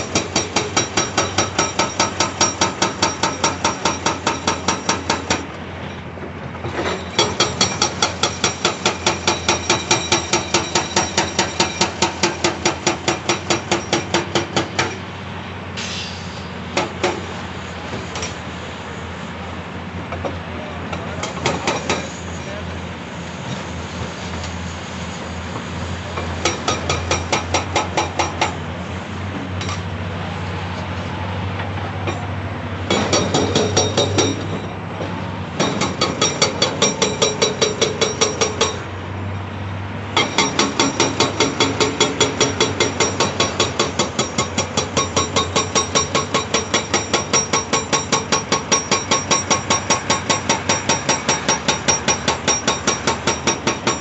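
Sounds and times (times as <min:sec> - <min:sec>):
hydraulic breaker hammering rock: 0:00.0 - 0:05.6, 0:06.6 - 0:15.1, 0:16.7 - 0:17.3, 0:20.2 - 0:22.2, 0:26.2 - 0:28.6, 0:32.8 - 0:38.9, 0:40.1 - 0:54.0
diesel engine hum: 0:14.0 - 0:47.4.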